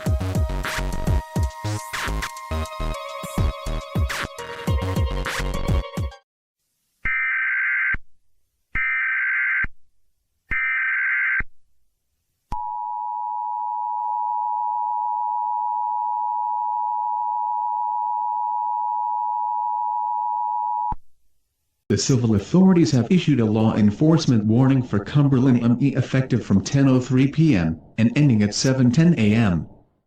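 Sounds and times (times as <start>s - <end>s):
music: 0.0s - 6.2s.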